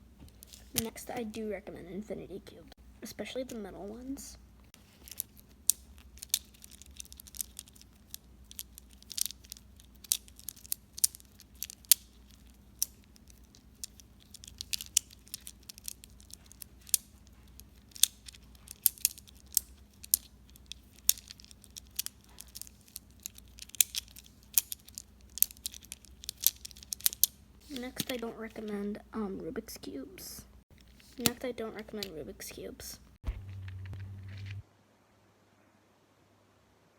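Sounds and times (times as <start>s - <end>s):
metal blocks clicking: 5.1s - 27.3s.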